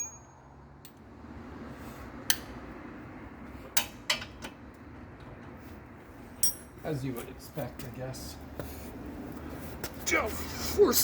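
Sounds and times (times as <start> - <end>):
metal tools clinking on metal: 6.4 - 7.3.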